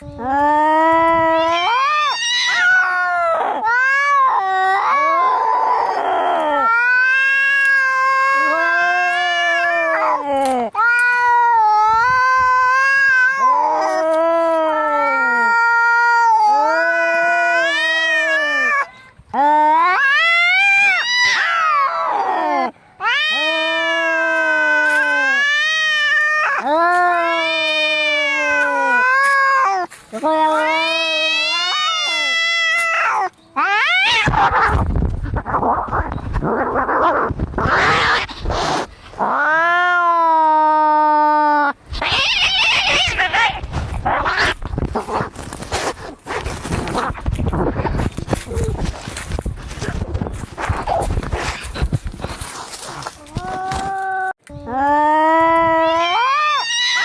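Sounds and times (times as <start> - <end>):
cats yowling: 0.0 - 45.6, 46.4 - 57.0
cat hissing: 37.6 - 39.0, 41.9 - 48.8.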